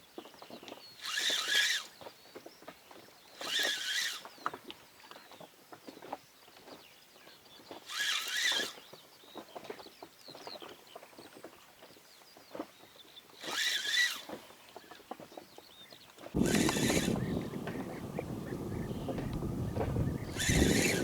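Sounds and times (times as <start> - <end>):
spinning reel cranking: 7.9 - 8.7, 16.4 - 21.0.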